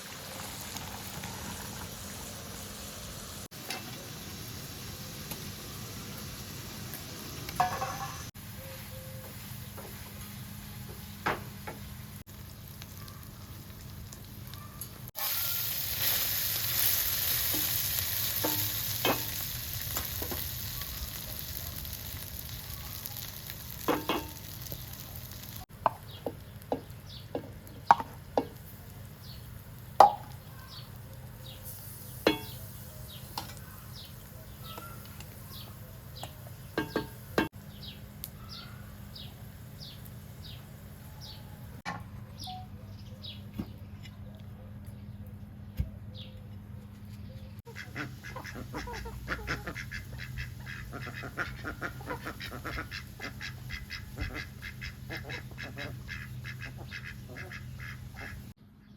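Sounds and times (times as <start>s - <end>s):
food sizzling in a pan: 0.0s - 10.4s, 15.1s - 25.7s, 31.6s - 34.1s.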